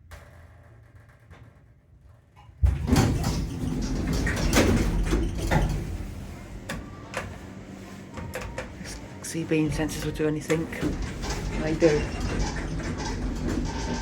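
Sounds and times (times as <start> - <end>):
lift sliding doors moving: 2.6 - 14.0
door knocks and rattles: 10.7 - 14.0.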